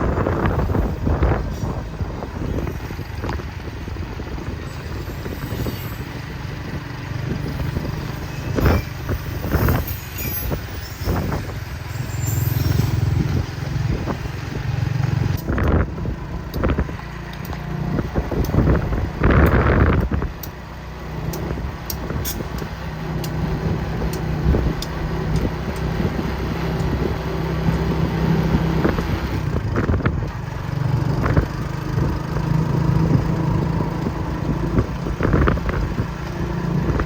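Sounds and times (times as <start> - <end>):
diesel locomotive engine drone: 0.0 - 37.0.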